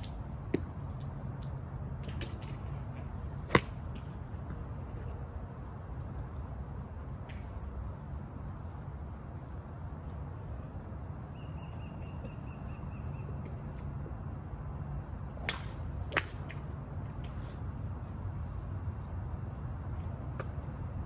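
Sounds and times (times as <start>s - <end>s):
golf club striking ball: 3.5s - 3.8s.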